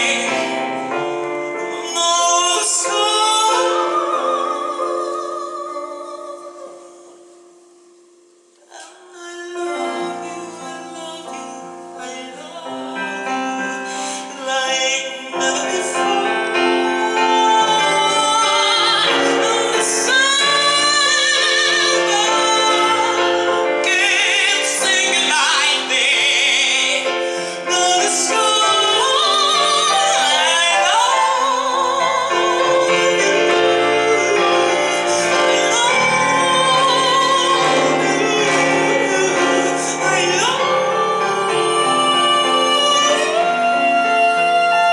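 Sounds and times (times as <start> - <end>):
person singing operatic ballad: 0.0 - 7.6, 8.6 - 44.9
piano accompaniment: 0.0 - 44.9.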